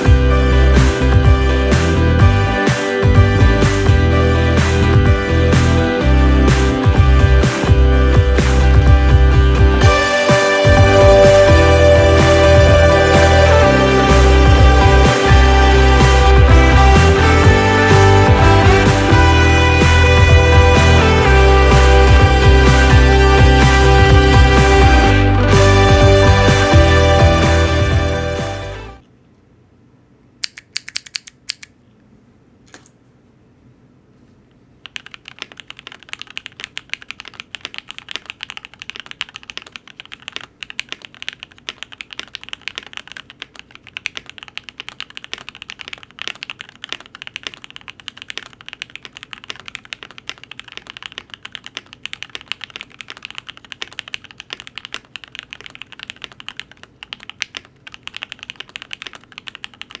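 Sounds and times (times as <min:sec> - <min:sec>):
mechanical keyboard typing: 0:30.4 - 0:31.7, 0:34.8 - 1:00.0.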